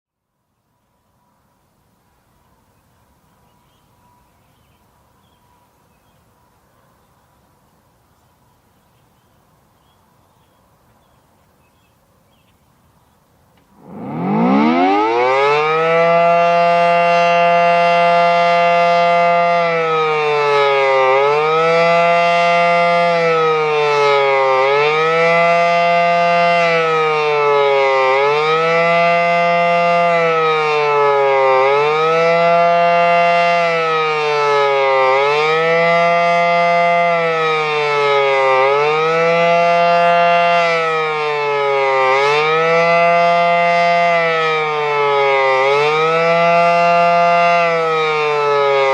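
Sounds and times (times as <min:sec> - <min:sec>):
warning siren wailing: 0:13.7 - 0:48.9.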